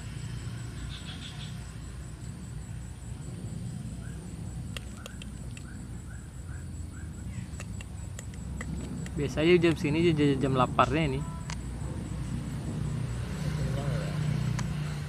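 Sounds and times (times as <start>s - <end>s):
short chirping calls: 0.7s - 1.8s, 4.8s - 9.2s
sharp clicks: 4.7s - 5.7s, 7.5s - 9.2s.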